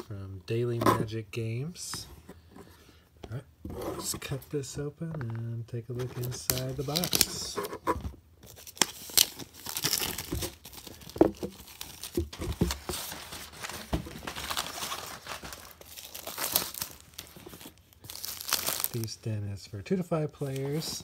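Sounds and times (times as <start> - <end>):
plastic shrink wrap crinkling: 6.0 - 7.6, 8.5 - 19.1.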